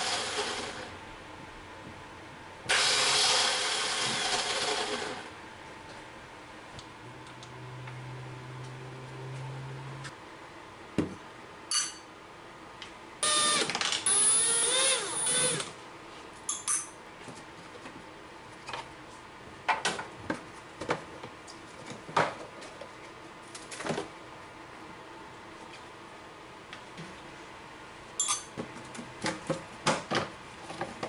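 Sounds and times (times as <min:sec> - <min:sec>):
small electric motor whining: 0:13.2 - 0:15.7.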